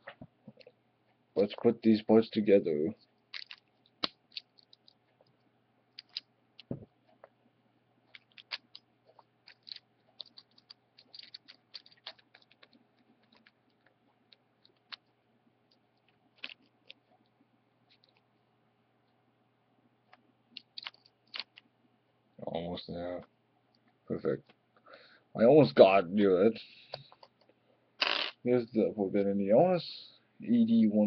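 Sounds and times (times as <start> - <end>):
small parts clicking and rattling: 3.3 - 7.3, 8.0 - 15.1, 15.7 - 17.2, 20.6 - 21.7.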